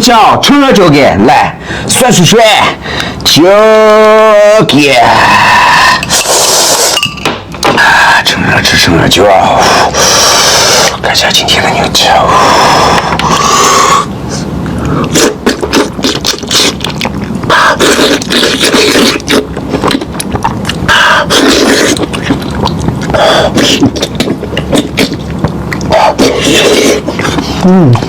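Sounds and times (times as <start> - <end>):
voice murmurs: 25.9 - 28.0.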